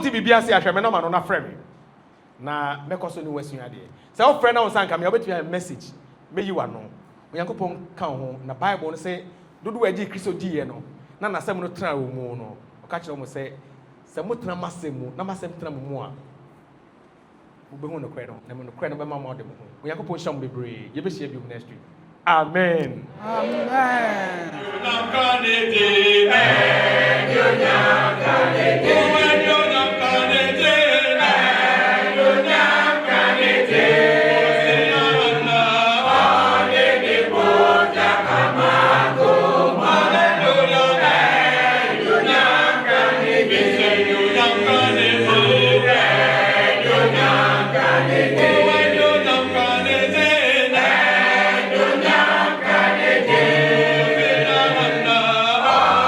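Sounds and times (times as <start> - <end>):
low bass voice holding notes: 23.2 - 24.7
group singing a cappella: 23.2 - 56.0.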